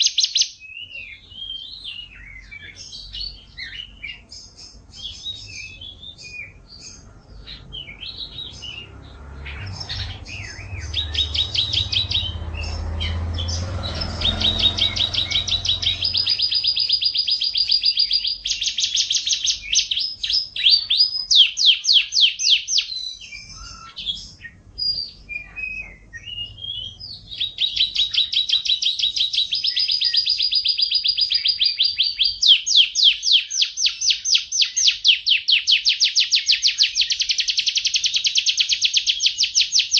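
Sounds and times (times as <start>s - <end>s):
canary singing trills: 0.0s - 39.9s
low rumble: 7.0s - 16.8s.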